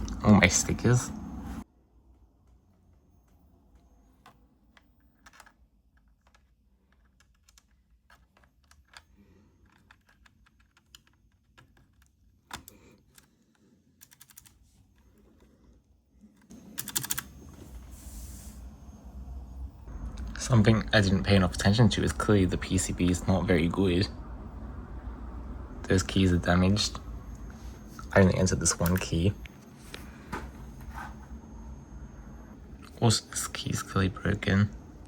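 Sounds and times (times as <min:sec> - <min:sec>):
mechanical keyboard key clicks: 0:16.8 - 0:17.3.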